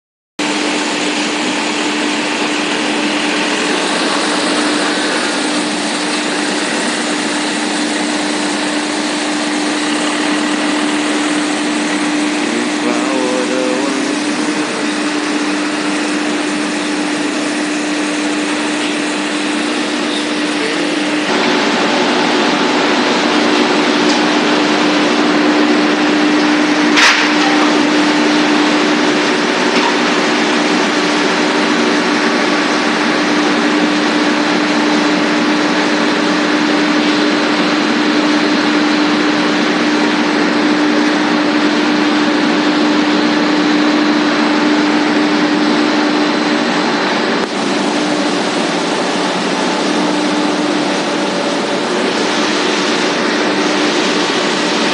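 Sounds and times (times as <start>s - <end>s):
machinery running: 0.4s - 54.9s.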